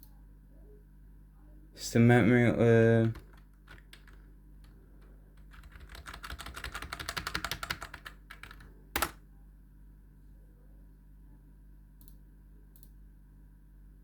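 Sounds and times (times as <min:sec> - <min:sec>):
computer keyboard clicking: 0:03.0 - 0:04.8, 0:05.4 - 0:09.2.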